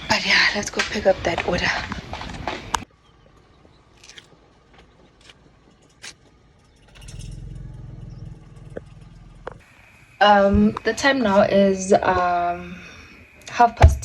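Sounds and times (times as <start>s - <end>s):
low engine-like rumble: 2.8s - 12.9s.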